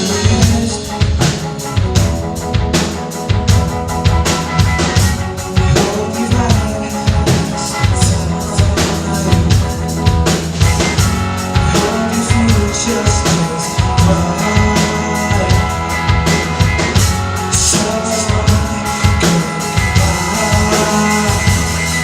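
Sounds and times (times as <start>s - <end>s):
drum kit beat: 0.0s - 22.0s
live band playing: 0.0s - 22.0s.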